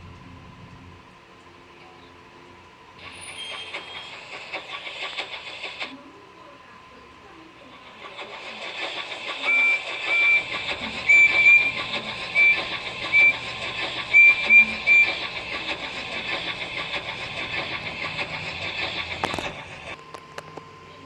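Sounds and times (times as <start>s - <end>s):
train running on track: 0.0s - 21.0s
train whistle toots: 3.0s - 4.4s, 8.9s - 19.5s.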